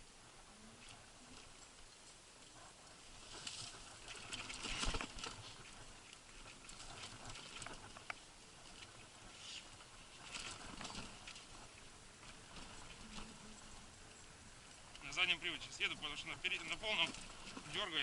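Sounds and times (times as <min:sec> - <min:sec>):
tyres pattering on wet mud: 0:14.6 - 0:18.0.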